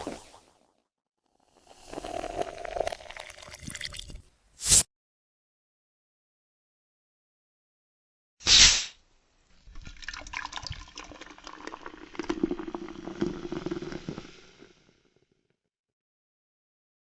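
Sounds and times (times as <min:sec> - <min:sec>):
cola pouring into glass: 0:01.6 - 0:04.3, 0:09.7 - 0:14.8.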